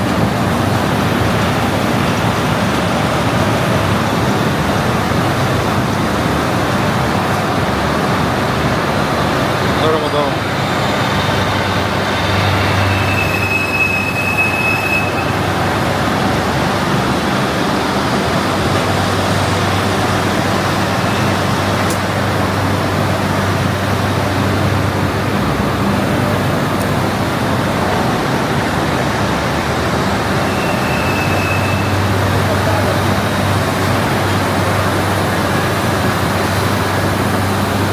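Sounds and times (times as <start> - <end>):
machinery running: 0.0 - 37.9
thin high whine: 11.9 - 15.8.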